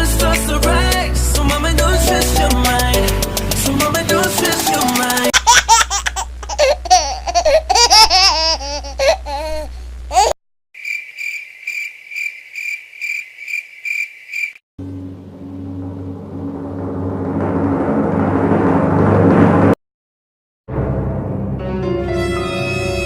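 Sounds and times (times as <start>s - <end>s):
high-pitched laughter: 5.3s - 10.4s
crickets chirping: 10.8s - 14.6s
low steady rumble: 14.8s - 19.8s.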